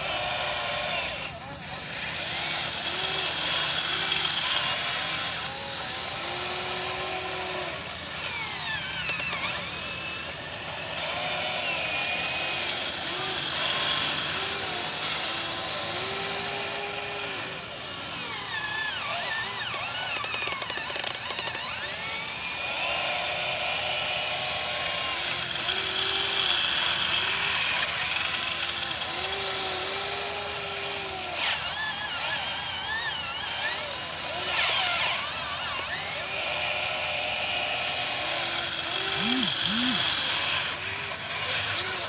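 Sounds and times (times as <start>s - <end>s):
small electric motors whining: 0.0s - 42.0s.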